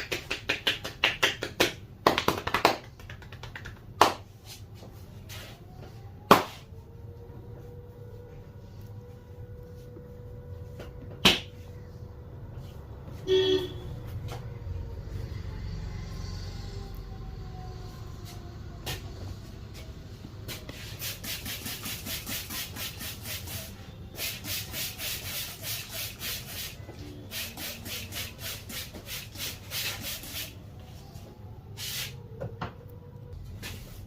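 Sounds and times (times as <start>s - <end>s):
hands rubbing over skin and hair: 2.3s - 5.6s.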